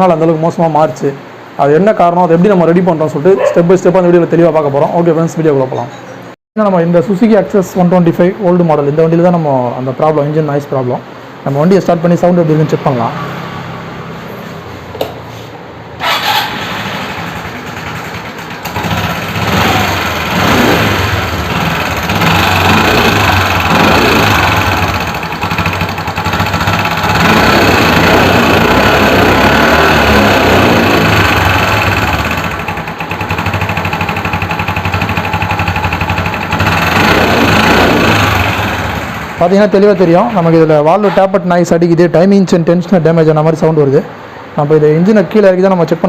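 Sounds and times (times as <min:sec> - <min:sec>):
scooter engine rattling and revving: 0:16.0 - 0:40.4.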